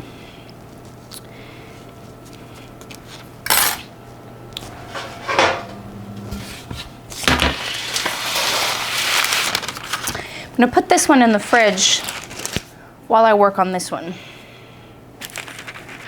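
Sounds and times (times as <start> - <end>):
utensils scraping and clattering: 4.6 - 10.1
scraping rustle: 4.7 - 10.1.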